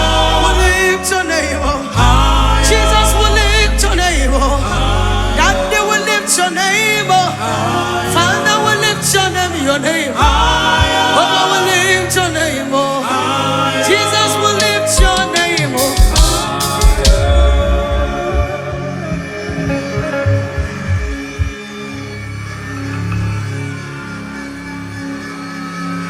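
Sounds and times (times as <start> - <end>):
person singing gospel melody: 0.0 - 21.5
band with bass and cymbals: 14.6 - 21.6.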